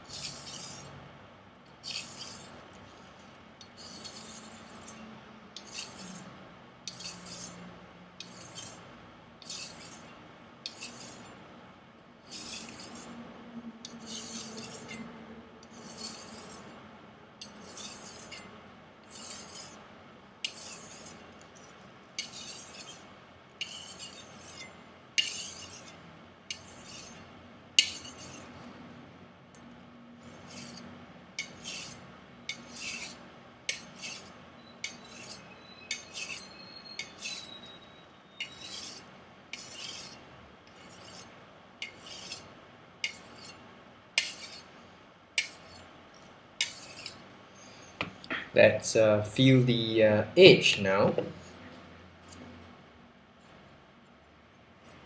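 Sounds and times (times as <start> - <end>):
knife blade stropping on board: 0.1 - 0.9, 1.8 - 5.0, 5.6 - 6.3, 6.9 - 7.6, 8.2 - 8.8, 9.4 - 11.4, 12.3 - 13.1, 13.8 - 16.8, 17.4 - 18.5, 19.1 - 19.8, 20.4 - 28.5, 30.2 - 37.8, 38.4 - 43.6, 44.2 - 44.7, 45.4 - 45.9, 46.6 - 47.2.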